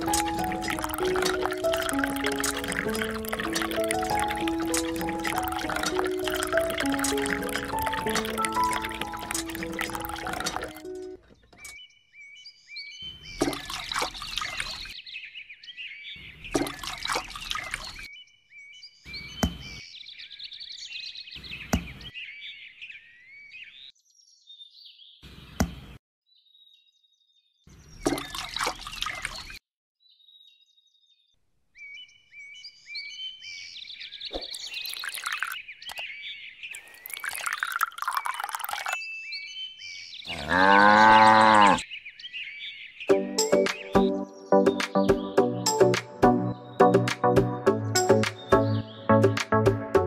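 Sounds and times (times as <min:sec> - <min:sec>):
water pouring and splashing: 0:00.0 - 0:11.1, 0:13.2 - 0:15.0, 0:16.4 - 0:18.1, 0:28.0 - 0:29.6, 0:34.3 - 0:36.1, 0:36.8 - 0:39.0
small birds chirping: 0:00.0 - 0:47.1.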